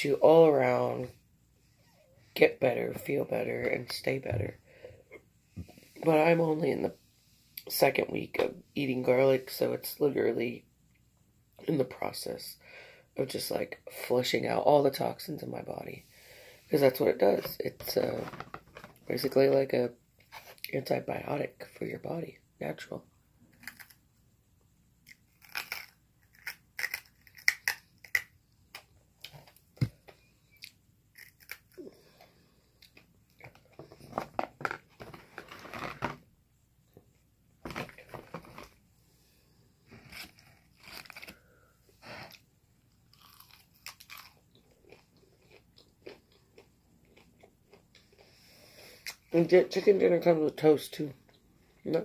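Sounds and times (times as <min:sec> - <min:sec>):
chewing and crunching crispy food: 0:23.6 - 0:24.0, 0:25.0 - 0:29.6, 0:30.5 - 0:34.2, 0:40.0 - 0:49.2.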